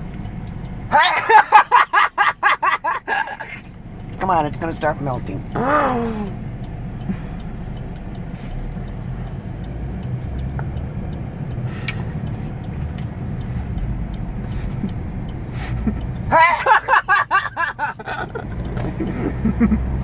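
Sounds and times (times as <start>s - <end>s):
vehicle low rumble: 0.0s - 20.0s
faint small clicks: 11.5s - 13.2s.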